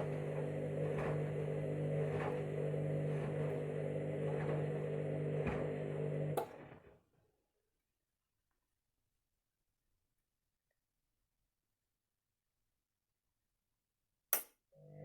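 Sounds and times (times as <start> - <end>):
washing machine drum motor running: 0.0 - 6.8.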